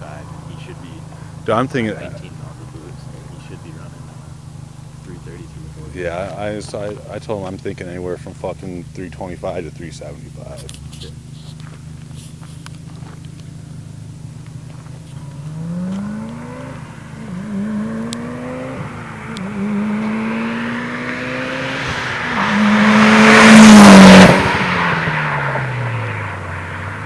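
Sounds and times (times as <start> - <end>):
car accelerating hard past: 15.0 - 27.0.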